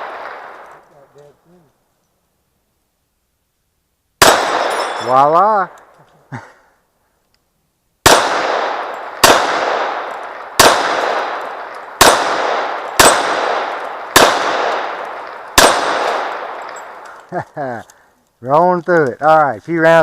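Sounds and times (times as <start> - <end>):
handgun shots ringing steel targets: 4.2 - 5.4, 8.1 - 17.0.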